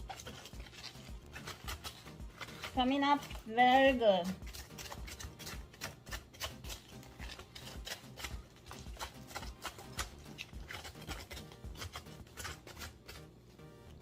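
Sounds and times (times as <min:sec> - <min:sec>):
crisp scraping and cutting of cabbage: 0:00.0 - 0:14.0
quiet background music: 0:00.0 - 0:14.0.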